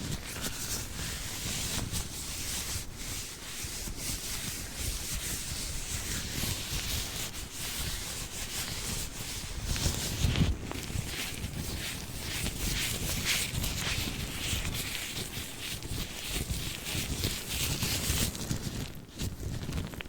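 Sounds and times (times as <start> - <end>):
latex gloves rubbing and crinkling: 0.0 - 20.0.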